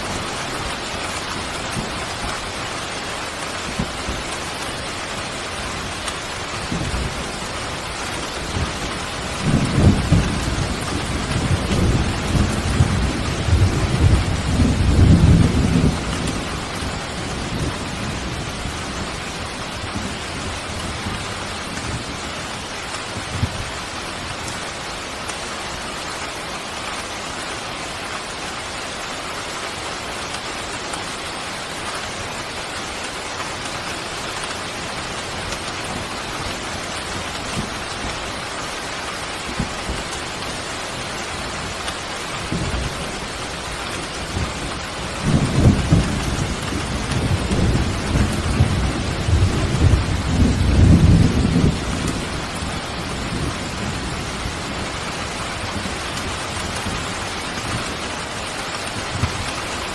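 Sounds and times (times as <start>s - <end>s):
thunder rumbling: 0.0s - 23.9s, 39.4s - 59.9s
rain falling: 0.0s - 59.9s.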